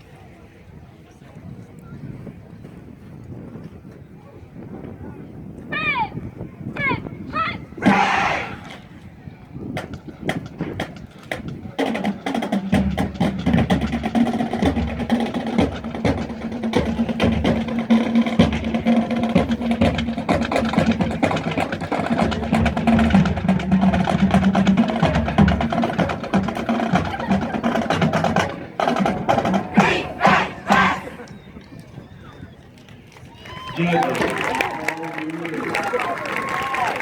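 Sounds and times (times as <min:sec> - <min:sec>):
marching band drums: 0:07.8 - 0:08.8, 0:09.8 - 0:31.3.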